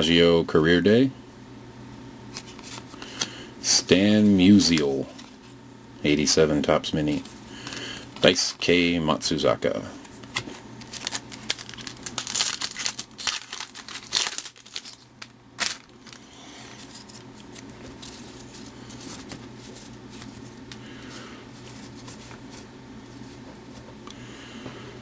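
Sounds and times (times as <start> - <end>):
low steady hum: 0.0 - 25.0
faint rustling of cards: 2.3 - 3.3, 3.9 - 5.6, 6.9 - 8.7, 9.4 - 24.0
foil wrapper tearing and crinkling: 10.3 - 20.6.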